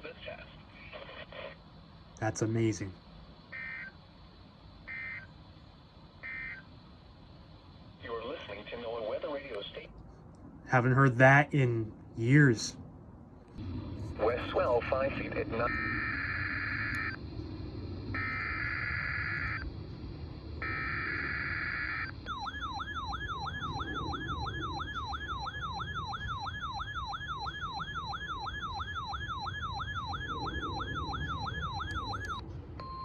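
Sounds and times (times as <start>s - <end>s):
radio static: 0.0s - 4.0s, 7.9s - 9.9s, 13.6s - 17.2s
harsh buzzing data bursts: 2.3s - 5.4s, 6.2s - 8.5s, 13.6s - 17.2s, 18.0s - 32.4s
siren-like alert tone sweeping: 15.7s - 17.2s, 18.1s - 19.6s, 20.6s - 32.4s.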